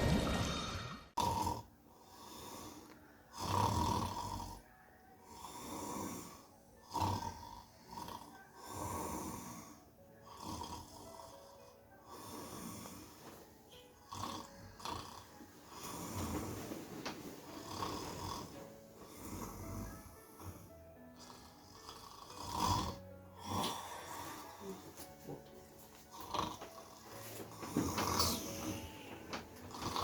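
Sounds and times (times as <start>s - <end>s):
man snoring heavily: 0.4s - 13.2s, 14.0s - 16.8s, 17.5s - 24.9s, 26.1s - 30.0s.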